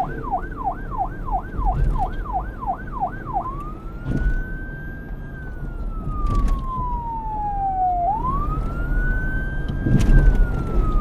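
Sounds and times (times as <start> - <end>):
low wind rumble: 0.0 - 11.0
police siren wailing: 0.0 - 11.0.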